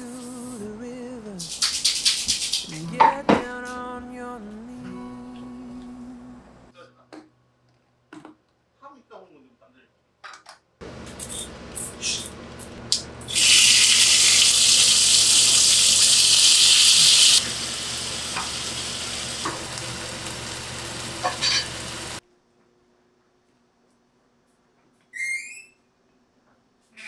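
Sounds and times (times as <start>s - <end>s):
food sizzling in a pan: 1.4s - 2.8s, 10.8s - 22.2s.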